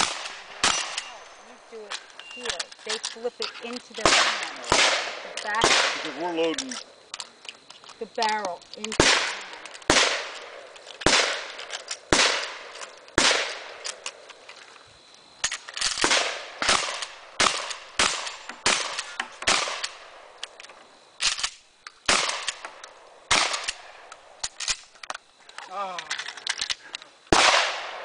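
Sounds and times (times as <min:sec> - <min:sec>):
shotgun shots echoing: 0:00.0 - 0:02.6, 0:04.0 - 0:06.7, 0:08.9 - 0:14.2, 0:16.0 - 0:20.4, 0:21.2 - 0:24.8, 0:27.3 - 0:28.0.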